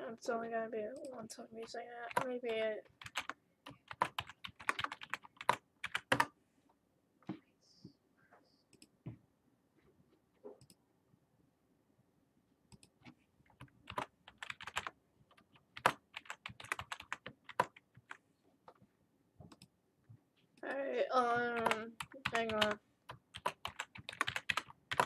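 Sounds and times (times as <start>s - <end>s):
computer keyboard typing: 1.0s - 6.3s, 12.7s - 18.8s, 21.4s - 25.0s.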